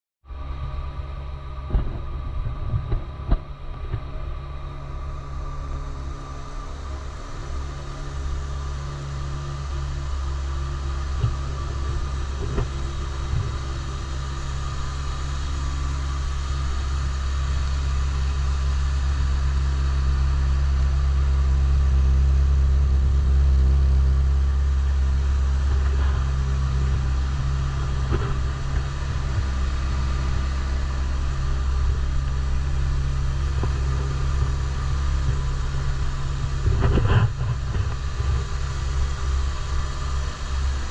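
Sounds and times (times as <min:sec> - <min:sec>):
motorcycle engine idling: 0:03.8 - 0:40.9.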